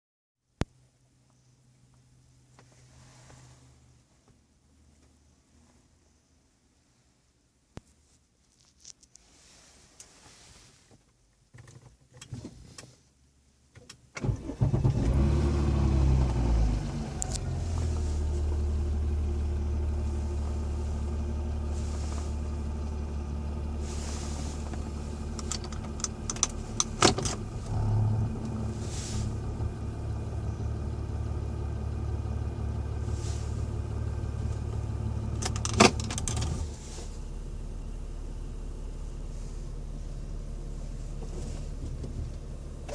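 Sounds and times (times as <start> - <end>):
car engine starting and idling: 13.7 - 42.9.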